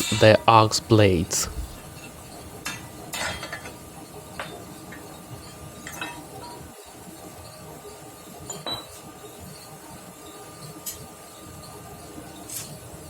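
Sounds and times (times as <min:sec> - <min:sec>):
faint steady hum: 0:00.0 - 0:02.6.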